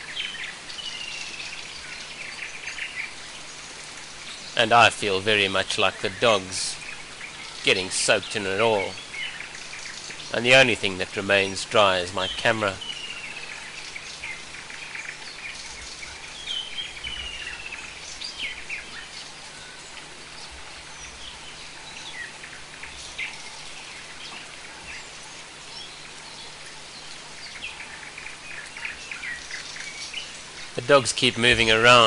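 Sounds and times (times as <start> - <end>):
bird chirps: 0.0 - 32.0
birds whistling calls: 0.0 - 32.0
steady rain: 0.0 - 32.0.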